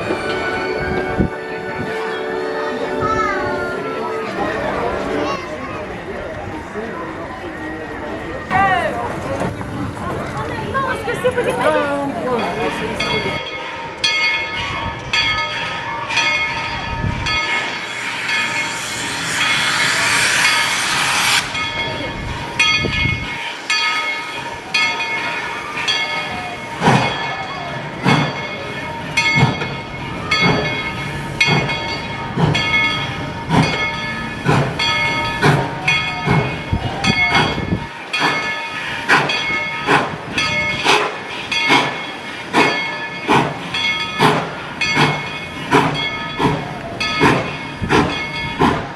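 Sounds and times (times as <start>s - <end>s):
steam locomotive exhaust chuffs: 16.6s - 48.9s
steam hissing: 17.1s - 28.4s, 29.0s - 48.9s.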